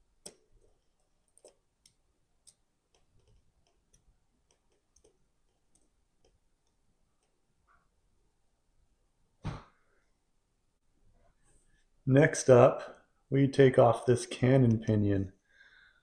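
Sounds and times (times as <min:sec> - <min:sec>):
fine tools clicking on watch parts: 0:00.2 - 0:07.4.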